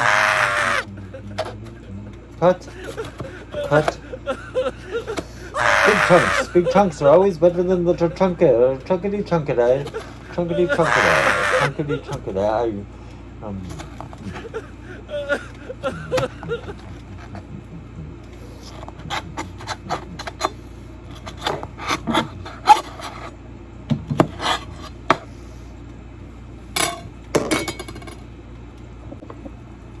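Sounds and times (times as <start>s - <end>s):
knife chopping on cutting board: 23.9s - 25.3s.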